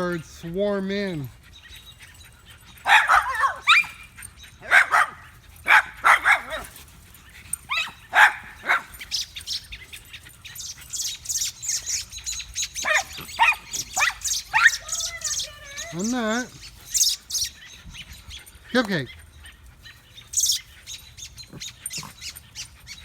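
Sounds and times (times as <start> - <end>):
birds chirping in alarm: 0.0 - 23.0
puppy yapping: 2.8 - 6.8, 7.7 - 9.9, 10.8 - 17.1.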